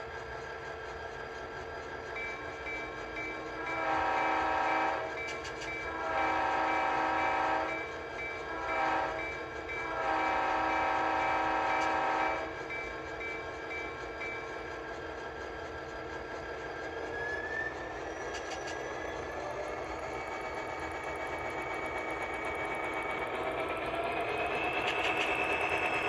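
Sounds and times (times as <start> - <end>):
locomotive bell ringing: 2.2 - 15.2
model train chime horn: 3.6 - 12.9.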